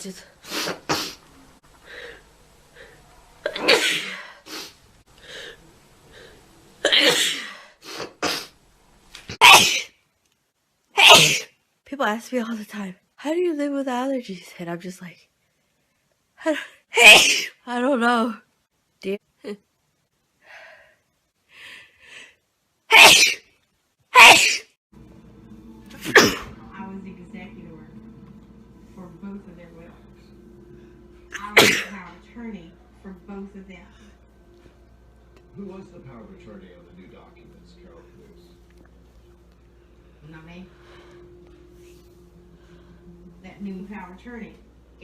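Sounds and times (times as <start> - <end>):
woman sneezing: 3.5 - 4.7, 6.8 - 8.5, 9.4 - 9.9, 11.0 - 11.5, 16.9 - 17.6, 22.9 - 23.4, 24.1 - 24.7, 26.0 - 26.5, 31.3 - 32.0
faint breaths: 4.0 - 6.6, 39.7 - 43.3.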